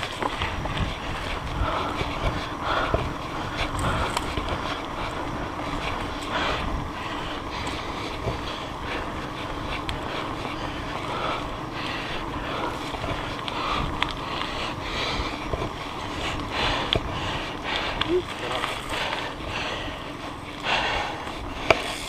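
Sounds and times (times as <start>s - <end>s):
wind on microphone: 0.0s - 7.0s
bike rattles and knocks: 0.0s - 22.0s.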